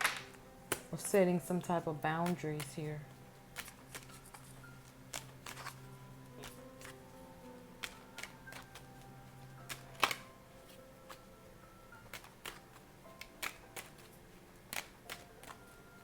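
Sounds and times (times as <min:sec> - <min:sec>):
cards clicking and tapping: 0:00.0 - 0:01.1, 0:02.2 - 0:02.9, 0:03.5 - 0:07.0, 0:07.7 - 0:10.3, 0:12.0 - 0:15.8
quiet background music: 0:00.0 - 0:16.0.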